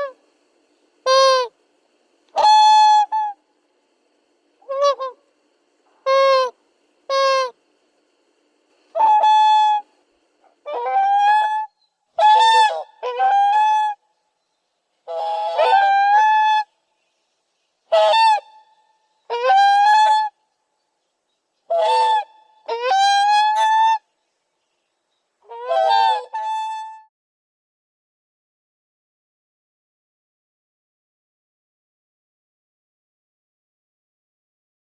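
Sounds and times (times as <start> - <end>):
swan calling: 0.0 - 0.2, 1.0 - 1.6, 2.4 - 3.4, 4.6 - 5.3, 6.0 - 7.6, 8.9 - 14.1, 15.0 - 16.7, 17.9 - 20.5, 21.7 - 24.1, 25.4 - 27.1.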